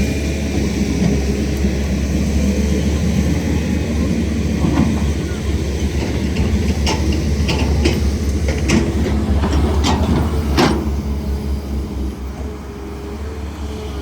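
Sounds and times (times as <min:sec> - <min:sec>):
diesel engine rumbling: 0:00.0 - 0:14.0
sharp metal knocks and clanks: 0:06.2 - 0:11.0.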